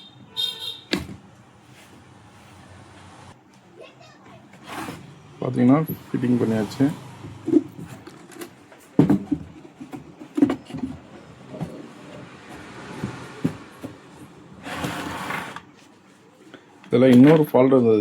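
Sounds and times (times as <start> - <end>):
hard objects knocking and clicking: 7.2 - 14.1.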